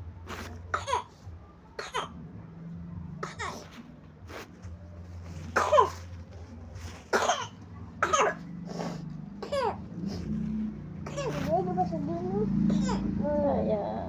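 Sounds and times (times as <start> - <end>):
young child coughing: 0.7 - 2.2, 3.2 - 3.7, 5.6 - 6.1, 7.1 - 8.6, 9.4 - 9.9.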